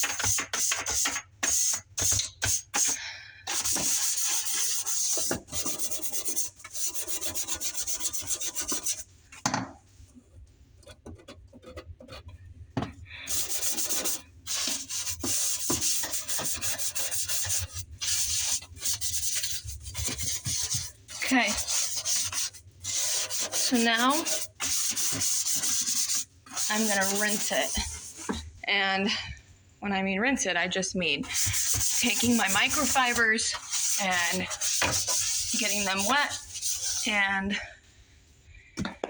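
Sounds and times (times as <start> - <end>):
brush scrubbing: 0.0 - 9.1, 13.2 - 28.4, 31.2 - 37.3.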